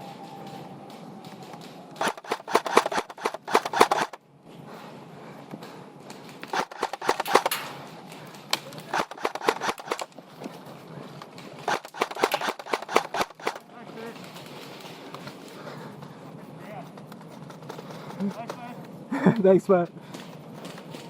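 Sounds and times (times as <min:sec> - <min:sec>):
airsoft gun rapid shots: 0:02.0 - 0:04.2, 0:06.5 - 0:07.8, 0:08.8 - 0:10.1, 0:11.6 - 0:13.6.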